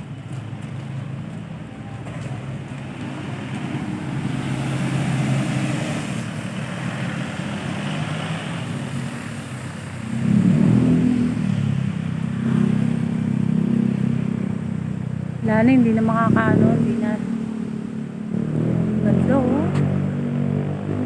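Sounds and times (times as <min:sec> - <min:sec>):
vehicle engine passing by: 0:00.6 - 0:21.0.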